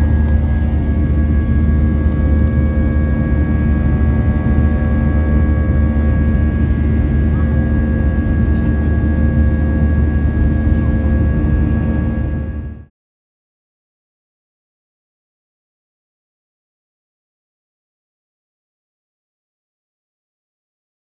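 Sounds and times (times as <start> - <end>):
steady engine tones: 0.0 - 12.2
aircraft cabin engine rumble: 0.0 - 12.8.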